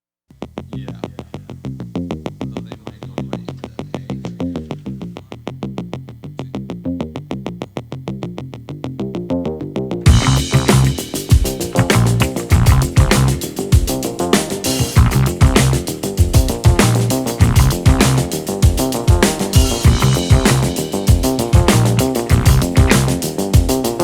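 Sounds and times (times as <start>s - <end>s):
electronic synthesizer music: 10.1s - 24.0s
heavy drum beats: 10.1s - 24.0s.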